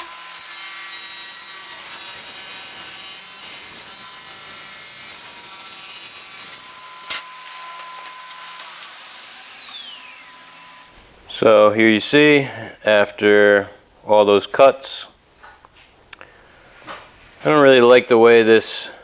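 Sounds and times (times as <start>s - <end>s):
saw blade winding down: 0.0s - 11.5s
table saw whine: 0.0s - 12.2s.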